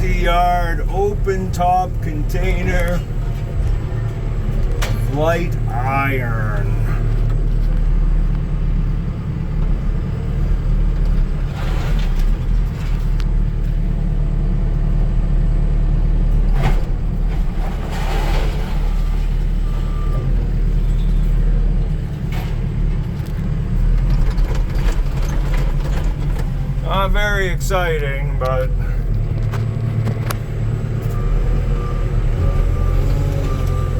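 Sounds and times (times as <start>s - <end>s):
scrap iron clanking and scraping: 0.0s - 8.4s, 10.9s - 14.0s, 16.3s - 31.2s
skid steer engine under load: 0.0s - 33.9s.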